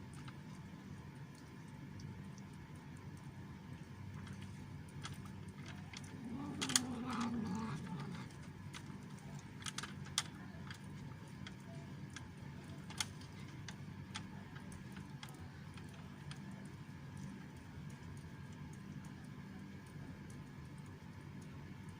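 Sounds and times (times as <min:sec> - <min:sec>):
cat chewing clicks: 0:04.1 - 0:20.9
cat growling: 0:05.7 - 0:09.4.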